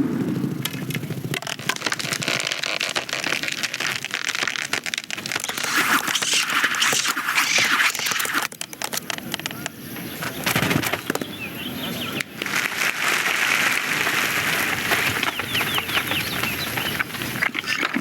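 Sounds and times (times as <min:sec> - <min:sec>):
crackles: 0:00.0 - 0:18.0
sharp clicks: 0:03.4 - 0:11.2
scrapes: 0:05.2 - 0:08.5.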